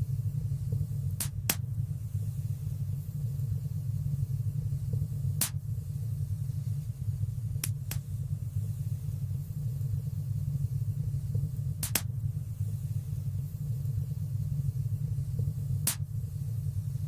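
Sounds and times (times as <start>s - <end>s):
low fire rumble: 0.0s - 17.0s
fire crackling with sharp pops: 0.6s - 1.9s, 4.9s - 5.8s, 7.6s - 8.3s, 11.6s - 12.3s, 15.8s - 16.2s.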